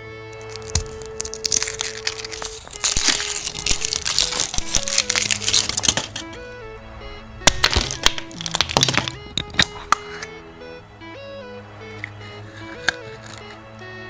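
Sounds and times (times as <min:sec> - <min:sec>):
background music: 0:00.0 - 0:14.0
wrapper crinkling and tearing: 0:00.4 - 0:06.4, 0:07.5 - 0:10.2, 0:12.5 - 0:13.6.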